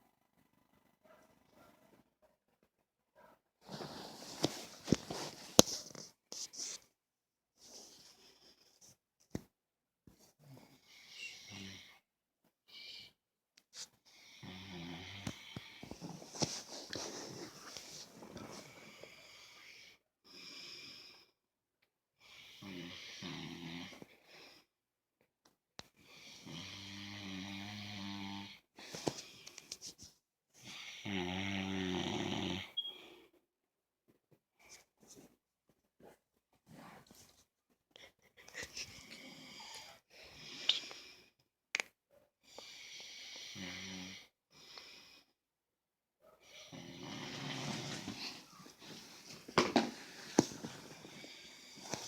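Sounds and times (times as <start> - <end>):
man snoring: 14.4 - 15.6, 22.5 - 23.9, 30.7 - 32.7, 43.2 - 44.3, 46.7 - 47.7.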